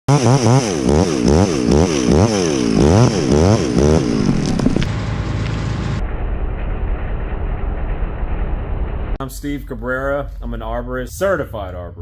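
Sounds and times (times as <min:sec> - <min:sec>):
chainsaw revving: 0:00.1 - 0:04.9.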